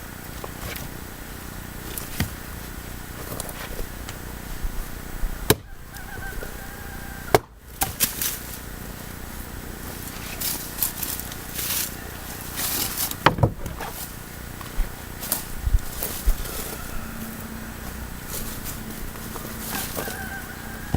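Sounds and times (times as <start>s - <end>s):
axe chopping wet firewood: 2.0s - 2.4s, 5.5s - 5.7s.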